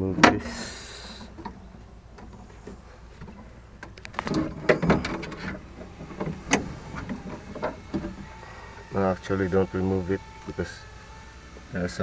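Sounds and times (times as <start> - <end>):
clicks and rattles of door mechanism: 0.0 - 8.8.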